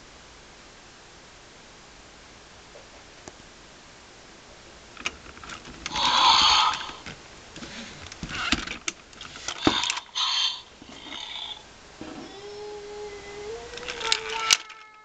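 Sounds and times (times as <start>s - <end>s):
plastic toy clicks: 5.0s - 7.2s, 8.2s - 10.4s, 13.7s - 15.0s
electronic toy sound effect: 12.2s - 15.0s.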